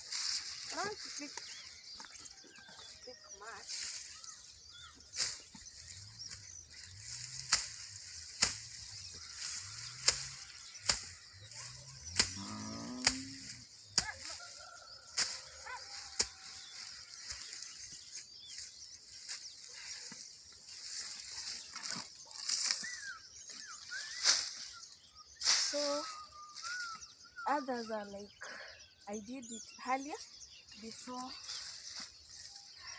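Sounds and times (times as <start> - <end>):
machete chopping grass: 6.3 - 14.4.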